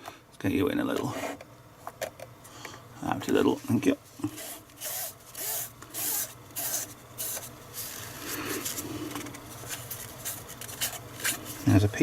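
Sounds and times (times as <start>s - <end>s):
rag scrubbing print head: 4.3s - 8.8s.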